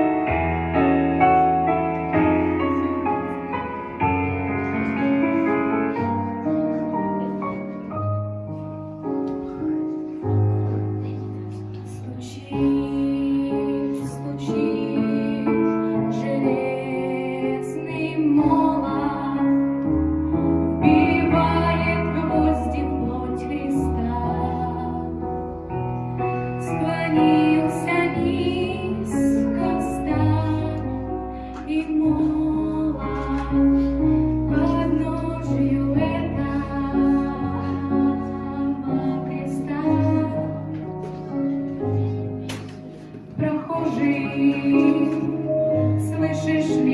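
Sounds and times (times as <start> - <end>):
piano accompaniment: 0.0 - 46.9
woman singing: 11.9 - 19.9, 20.8 - 25.2, 26.6 - 40.8, 43.4 - 46.9.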